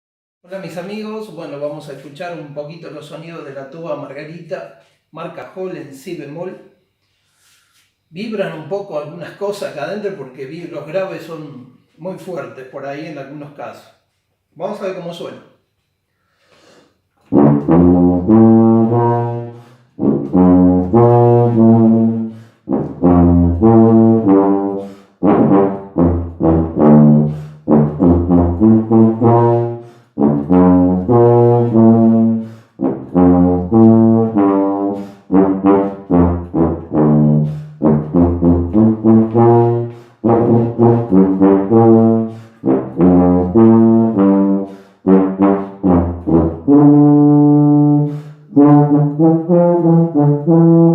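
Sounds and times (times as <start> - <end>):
player breathing: 7.0 - 8.0, 16.1 - 17.1, 32.4 - 32.8, 48.1 - 48.5
tuba playing low notes: 17.2 - 50.9.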